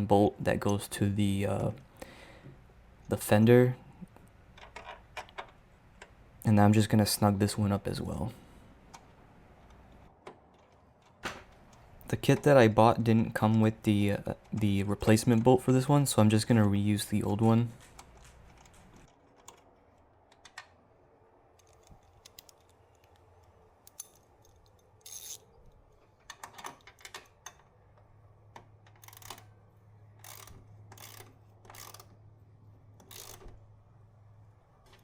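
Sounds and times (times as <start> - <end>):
ratchet clicking: 23.9 - 25.5, 28.9 - 29.5, 30.2 - 32.1, 33.0 - 33.5.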